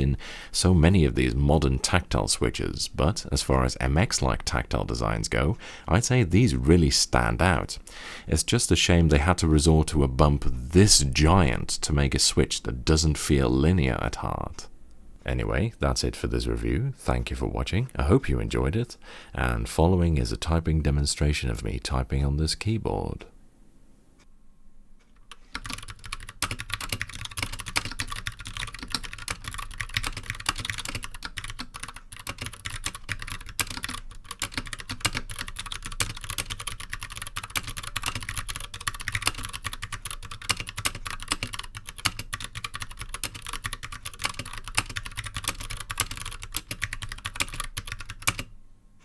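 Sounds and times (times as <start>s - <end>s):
mechanical keyboard typing: 25.3s - 48.5s.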